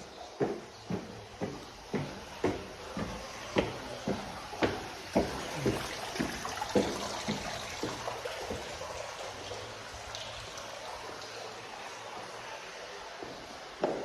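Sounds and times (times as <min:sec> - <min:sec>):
footsteps on bare floor: 0:00.0 - 0:08.9, 0:13.2 - 0:14.0.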